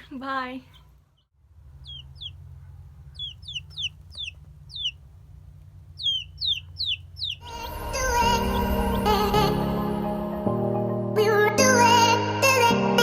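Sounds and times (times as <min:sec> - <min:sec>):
low steady hum: 0:00.0 - 0:11.0
baby chicks peeping: 0:00.6 - 0:07.6
music: 0:07.4 - 0:13.0.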